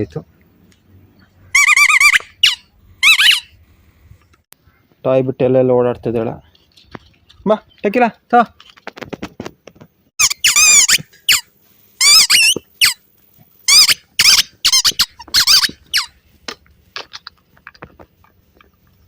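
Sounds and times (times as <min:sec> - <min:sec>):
squeaky dog toy squeaking: 0:01.5 - 0:03.6, 0:10.2 - 0:13.0, 0:13.7 - 0:16.1.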